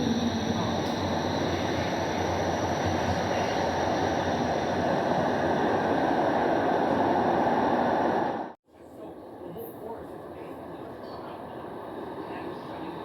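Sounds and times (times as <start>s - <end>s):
rail car wheels rumbling: 0.0s - 8.6s.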